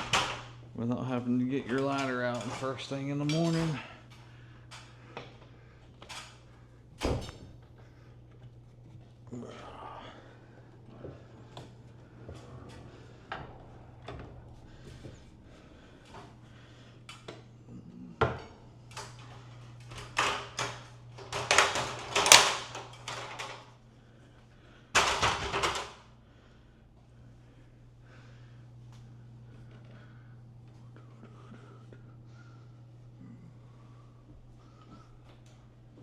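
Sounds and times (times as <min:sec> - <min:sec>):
steady low hum: 0:00.0 - 0:36.0
ladder and hatch clattering: 0:18.3 - 0:23.7.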